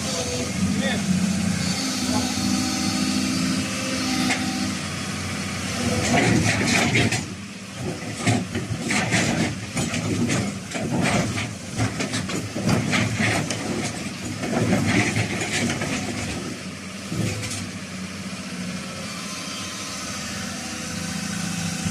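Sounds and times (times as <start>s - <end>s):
excavator diesel engine: 0.0s - 21.9s
knocks and clatter: 6.0s - 17.7s.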